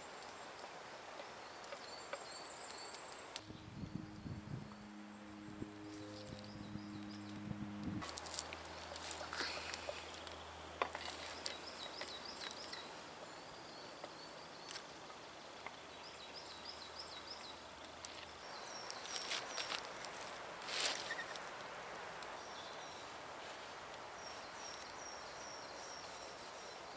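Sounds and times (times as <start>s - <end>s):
faint low hum: 3.5s - 10.7s
small bird chirping: 9.0s - 14.9s, 20.9s - 21.4s.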